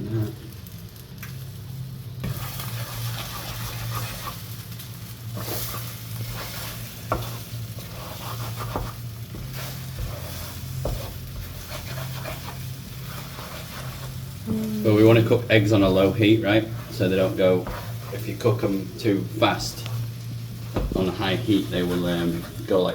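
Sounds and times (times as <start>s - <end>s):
food sizzling in a frying pan: 0.0s - 22.9s
steady low hum: 0.0s - 22.9s
utensil stirring food: 0.7s - 22.9s.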